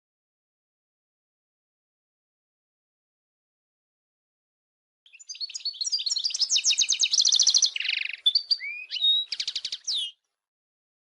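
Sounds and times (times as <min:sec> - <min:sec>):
goldfinch singing: 0:05.1 - 0:10.2.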